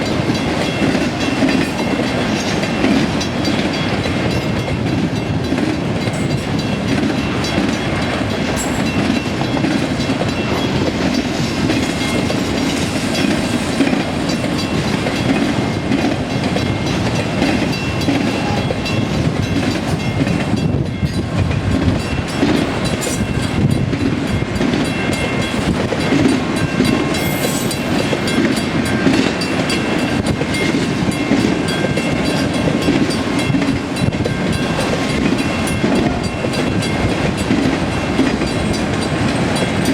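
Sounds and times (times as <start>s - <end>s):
train wheels clacking over rail joints: 0.0s - 39.9s.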